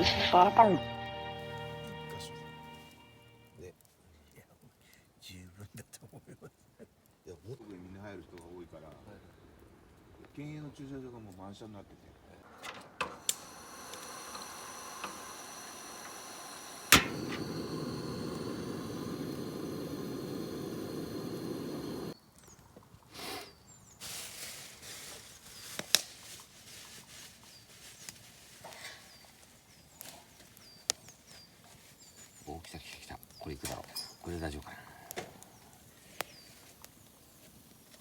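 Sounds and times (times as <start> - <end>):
steady hiss with whistling tones: 13.1 - 22.6, 23.2 - 38.0
sharp click: 13.2 - 19.4
campfire crackling and popping: 13.2 - 23.0, 29.4 - 38.0.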